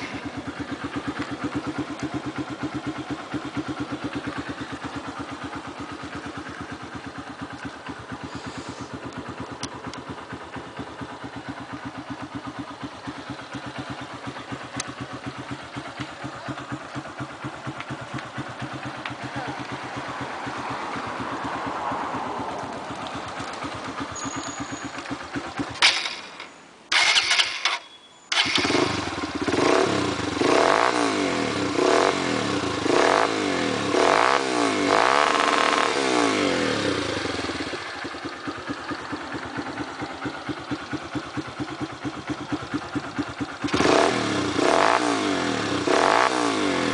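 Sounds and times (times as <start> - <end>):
motorcycle engine idling: 0.0 - 46.9
motorcycle engine revving: 0.0 - 46.9.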